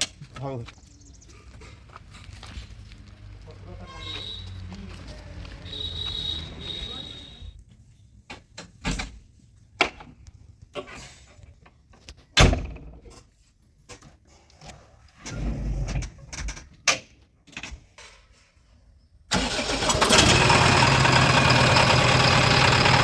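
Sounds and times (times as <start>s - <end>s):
diesel engine starting and running: 4.6s - 7.5s, 19.3s - 23.0s.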